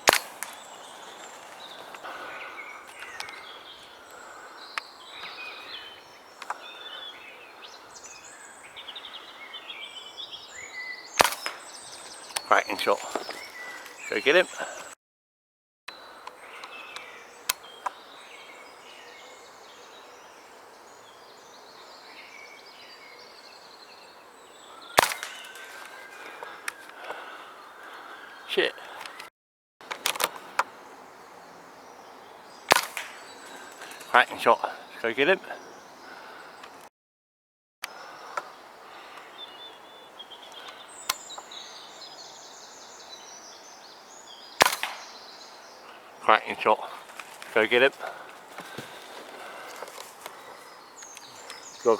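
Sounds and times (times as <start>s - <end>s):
short sharp clicks: 0.0s - 0.6s, 11.2s - 11.6s, 25.0s - 26.0s, 32.7s - 33.2s
air rifle shot: 0.0s - 1.0s, 11.2s - 11.9s, 25.0s - 25.9s, 32.7s - 33.6s, 44.6s - 45.2s
songbirds chirping and warbling: 0.0s - 15.0s, 15.9s - 36.9s, 37.8s - 51.9s
small clicks: 29.9s - 30.7s.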